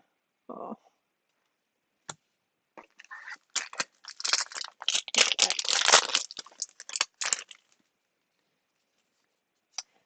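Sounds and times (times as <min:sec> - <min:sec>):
wrapper crinkling and tearing: 0:03.0 - 0:07.8.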